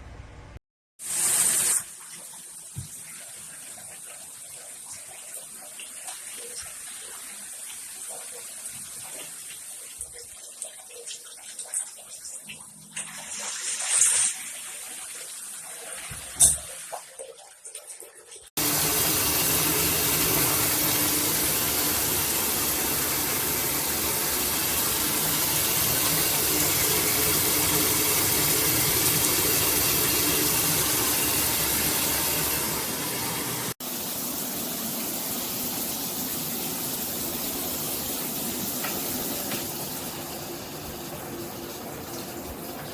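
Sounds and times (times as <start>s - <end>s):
shower head spraying water: 18.6s - 42.9s.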